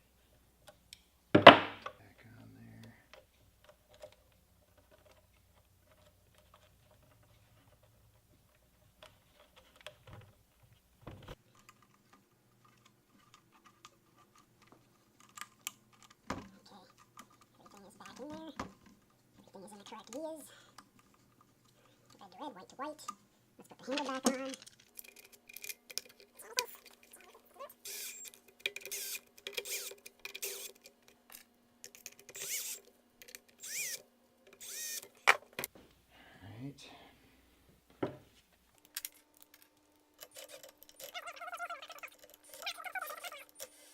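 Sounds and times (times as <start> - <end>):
small parts clicking and tapping: 2.8 - 35.7, 38.7 - 43.9.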